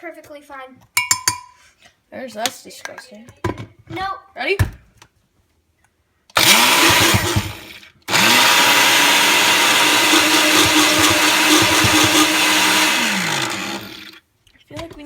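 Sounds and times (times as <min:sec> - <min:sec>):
blender motor whining: 0:06.3 - 0:14.2.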